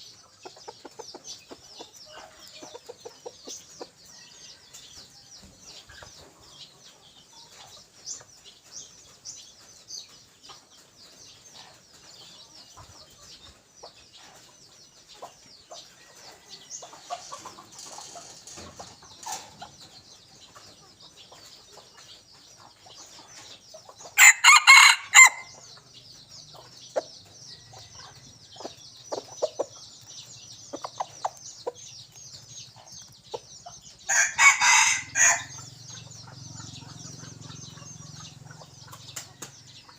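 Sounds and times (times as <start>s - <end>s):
rooster crowing: 24.2s - 25.5s, 34.1s - 35.5s.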